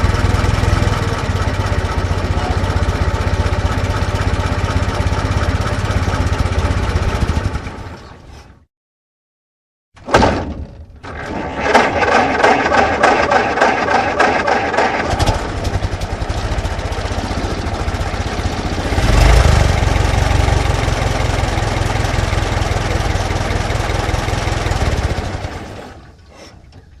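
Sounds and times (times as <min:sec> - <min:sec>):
car starter cranking: 0:11.0 - 0:16.3
car engine running: 0:12.5 - 0:25.8.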